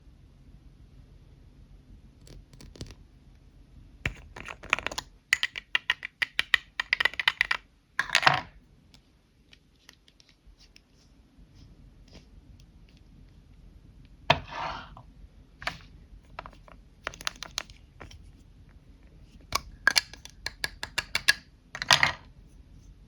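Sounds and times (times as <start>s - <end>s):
lipstick tube clicks and taps: 19.6s - 21.4s.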